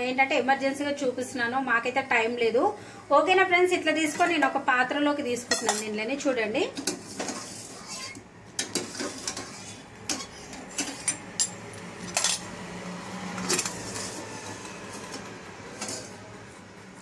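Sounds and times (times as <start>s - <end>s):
silverware clinking against metal: 5.5s - 6.0s.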